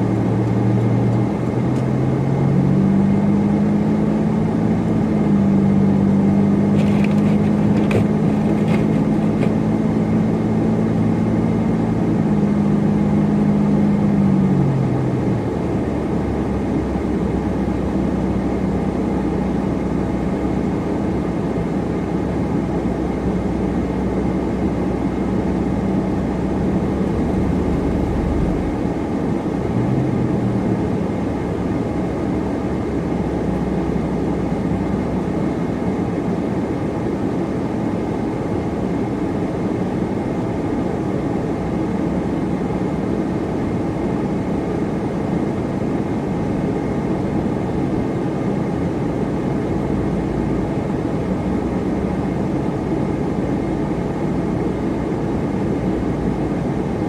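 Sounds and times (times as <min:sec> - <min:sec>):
car engine drone: 0:00.0 - 0:57.0
tyre and road noise: 0:06.3 - 0:10.2, 0:24.6 - 0:32.3.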